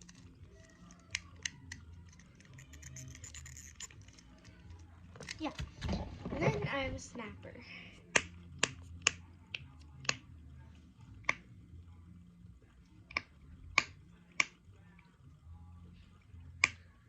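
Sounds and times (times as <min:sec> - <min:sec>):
fidget toy sharp snaps: 0:08.1 - 0:10.2.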